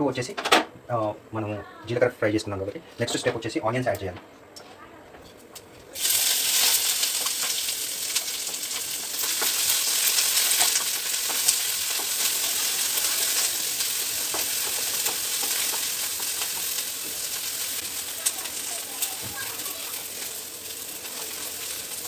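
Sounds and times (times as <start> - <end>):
stirring clicks: 5.6 - 22.0
onions sizzling in oil: 5.9 - 22.0.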